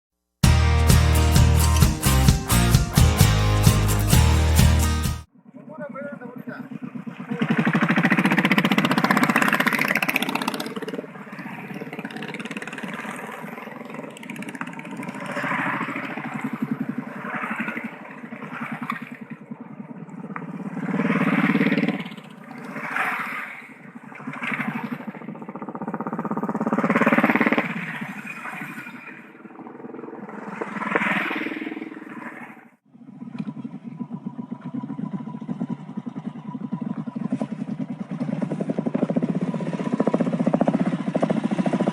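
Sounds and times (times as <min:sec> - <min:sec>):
motorcycle engines running: 0:06.4 - 0:18.0, 0:33.1 - 0:41.9.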